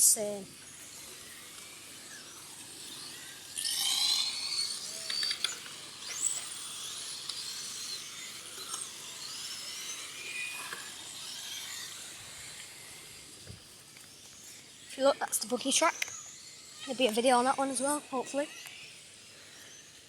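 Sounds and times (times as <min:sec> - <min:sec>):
toy race car motors whining: 0:00.0 - 0:20.0
sharp clicks: 0:05.0 - 0:05.8.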